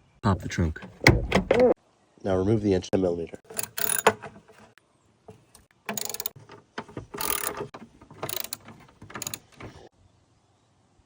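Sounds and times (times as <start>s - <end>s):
ratchet wrench clicking: 3.5s - 4.3s, 5.9s - 9.8s.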